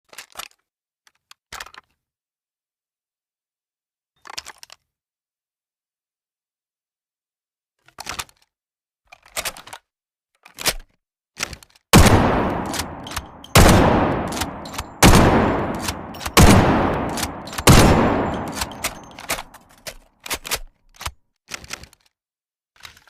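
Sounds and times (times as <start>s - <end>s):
rifle shots echoing: 12.0s - 19.6s.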